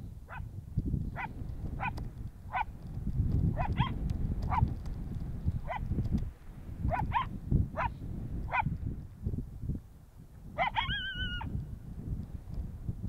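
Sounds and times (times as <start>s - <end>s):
low wind rumble: 0.0s - 13.0s
coyote yips: 3.6s - 4.7s, 5.6s - 5.8s, 10.6s - 11.5s
coyote howl: 10.6s - 11.5s.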